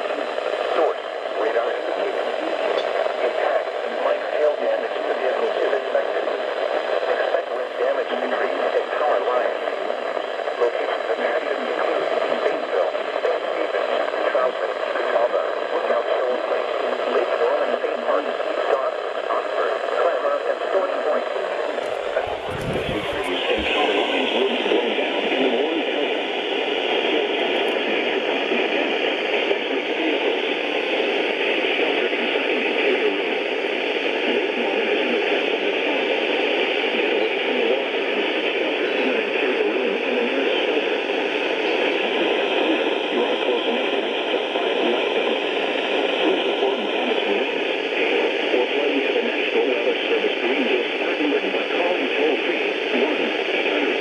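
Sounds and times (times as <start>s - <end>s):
radio static hiss: 0.0s - 36.0s.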